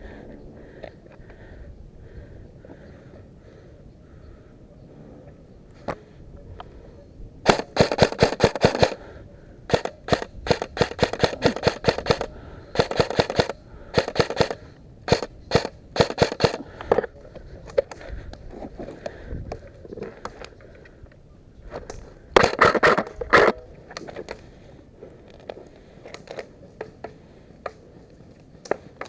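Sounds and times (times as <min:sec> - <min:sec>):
airsoft guns firing full auto: 0:07.4 - 0:09.1, 0:09.7 - 0:16.7, 0:22.4 - 0:23.5.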